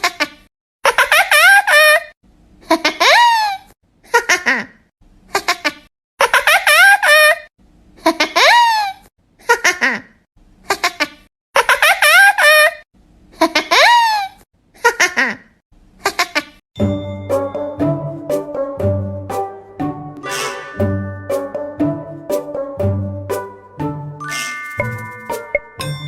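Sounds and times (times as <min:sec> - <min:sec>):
high-pitched laughing: 0:00.0 - 0:02.1, 0:02.7 - 0:12.8, 0:13.4 - 0:16.6.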